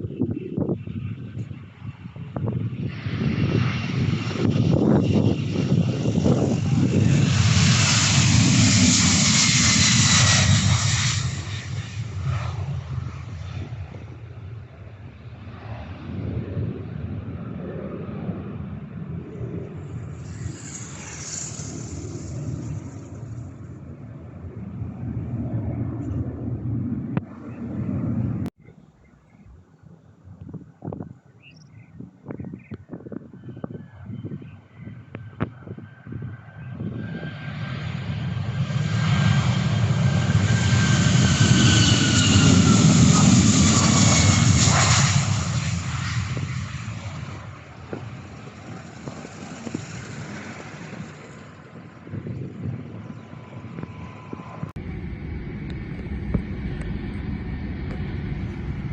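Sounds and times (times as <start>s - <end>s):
airliner engine rumble: 0.0s - 58.9s
high rushing hiss: 20.1s - 23.4s.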